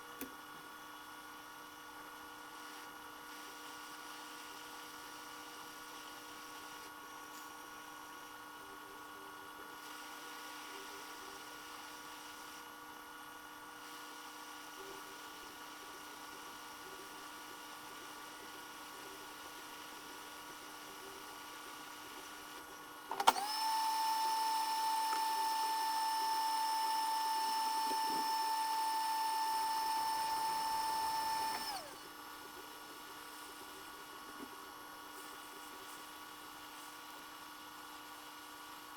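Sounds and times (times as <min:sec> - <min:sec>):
faint electrical hum: 0:00.0 - 0:38.9
small blower whining: 0:23.1 - 0:32.2.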